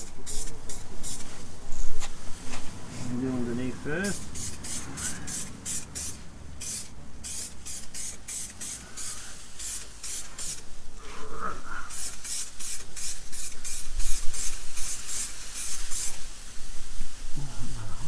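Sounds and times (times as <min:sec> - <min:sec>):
aerosol can spraying: 0:00.0 - 0:01.5, 0:04.0 - 0:10.7, 0:11.9 - 0:16.4.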